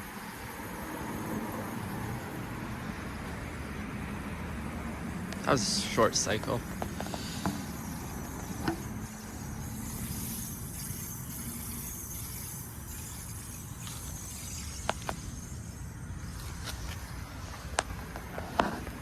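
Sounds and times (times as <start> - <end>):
heat pump humming: 0.0 - 19.0
steady electronic tone: 5.5 - 17.7.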